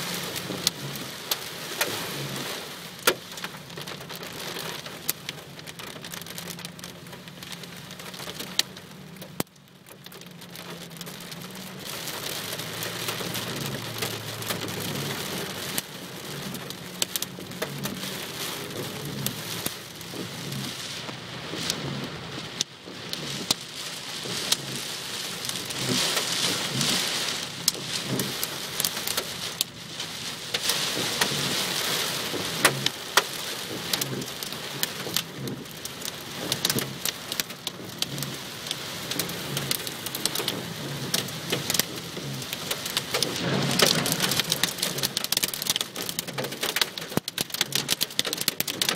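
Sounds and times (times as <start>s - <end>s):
heavy rain falling: 0.0s - 48.9s
raindrops clicking on hard surface: 0.0s - 48.9s.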